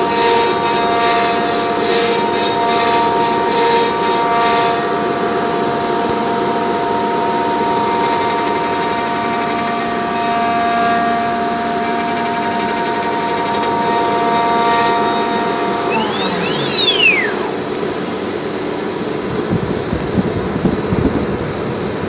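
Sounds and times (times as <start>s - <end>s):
router bit milling wood: 0.0s - 10.9s, 12.0s - 17.6s
router spindle whine: 0.0s - 17.9s.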